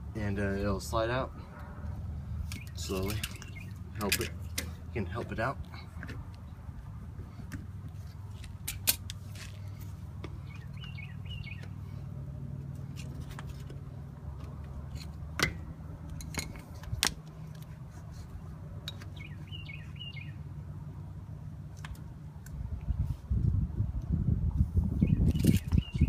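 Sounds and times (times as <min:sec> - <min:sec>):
birds chirping: 0:02.3 - 0:06.6, 0:10.3 - 0:12.0, 0:18.9 - 0:20.5, 0:25.0 - 0:26.0.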